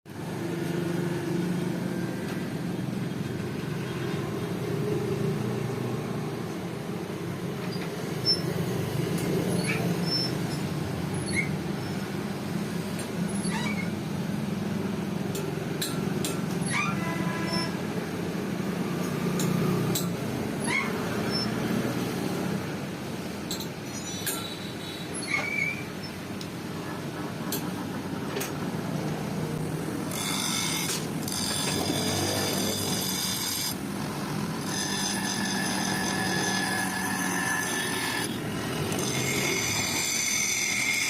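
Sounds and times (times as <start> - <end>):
low mechanical hum: 0.1 - 41.0
short high squeaks: 7.7 - 8.6, 9.5 - 12.0, 13.3 - 14.1, 16.6 - 17.8, 20.6 - 21.7, 23.8 - 26.2.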